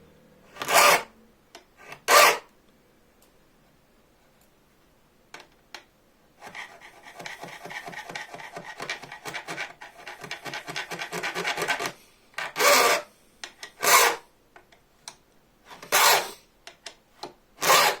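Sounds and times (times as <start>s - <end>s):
hand file on saw blade: 0.6s - 1.1s, 2.1s - 2.5s, 6.4s - 13.1s, 13.8s - 14.2s, 15.9s - 16.4s, 17.6s - 18.0s.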